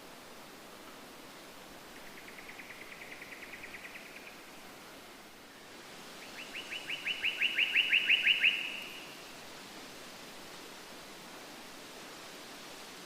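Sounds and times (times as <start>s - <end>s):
faint hiss: 0.0s - 13.0s
songbird trilling: 6.4s - 9.0s.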